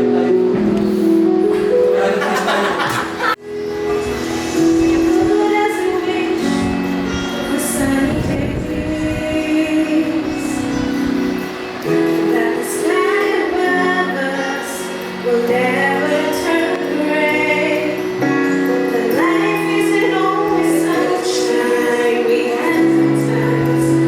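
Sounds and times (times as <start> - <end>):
gospel group singing in harmony: 0.0 - 3.4.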